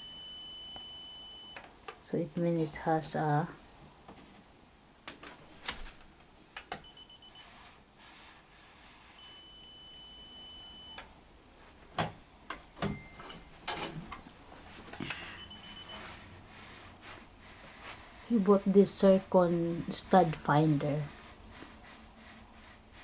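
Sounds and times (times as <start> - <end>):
stud finder beeping: 0.0 - 1.7, 6.8 - 7.5, 9.2 - 11.1, 15.0 - 16.3.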